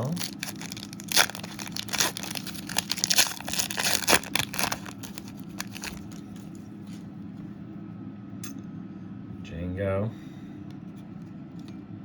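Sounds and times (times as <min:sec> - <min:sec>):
foil wrapper tearing and crinkling: 0:00.0 - 0:06.5.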